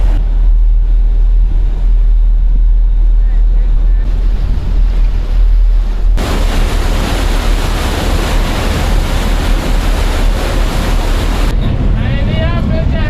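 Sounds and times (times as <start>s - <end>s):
boat engine rumble: 0.0s - 13.0s
wind and water rushing: 4.0s - 13.0s.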